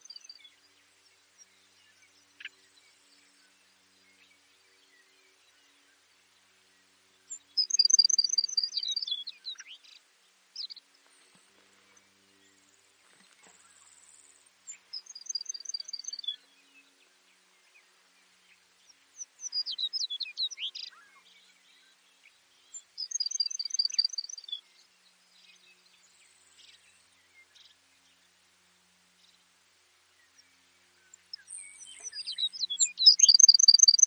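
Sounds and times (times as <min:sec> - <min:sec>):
sparrow singing: 0:07.1 - 0:10.0, 0:10.6 - 0:28.3, 0:30.2 - 0:34.0.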